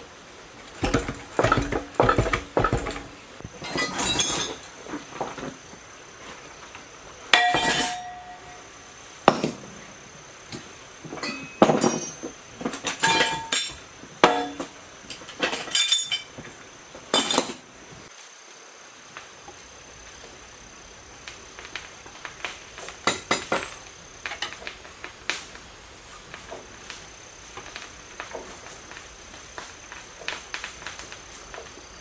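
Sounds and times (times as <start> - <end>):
metal tools clinking: 0.7 - 5.2, 7.3 - 8.8, 11.1 - 16.5, 17.1 - 17.6.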